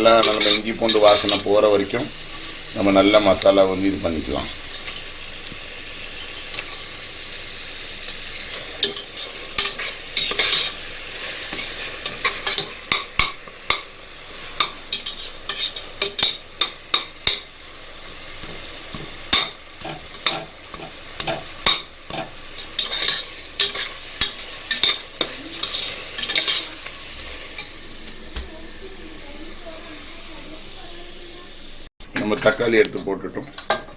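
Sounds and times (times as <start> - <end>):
spoon scraping a pan: 0.0 - 3.4, 4.4 - 7.0, 8.0 - 27.8
onions sizzling in oil: 0.0 - 33.9.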